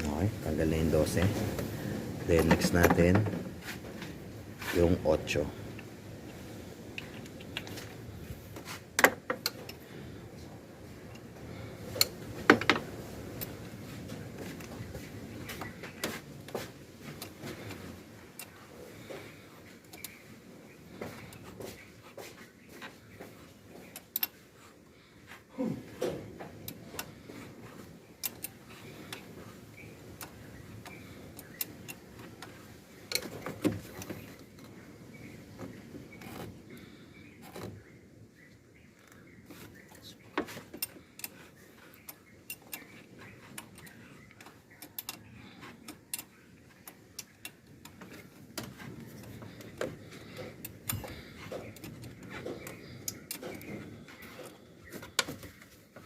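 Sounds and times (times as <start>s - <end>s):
hand tools clicking on metal: 40.8s - 55.5s.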